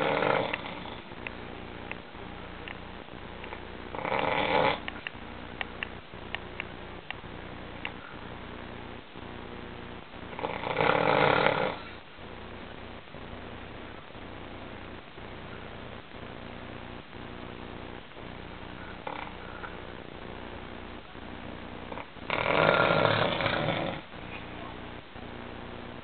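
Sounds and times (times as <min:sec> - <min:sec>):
person snoring: 0:00.0 - 0:01.1, 0:03.9 - 0:04.9, 0:10.3 - 0:12.0, 0:18.8 - 0:19.8, 0:21.9 - 0:24.1.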